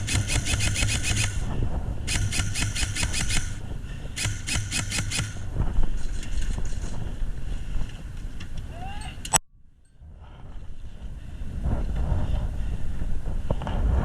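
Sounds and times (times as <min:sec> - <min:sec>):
airsoft rifle full-auto bursts: 0:00.0 - 0:01.5, 0:02.1 - 0:03.6, 0:04.2 - 0:05.5.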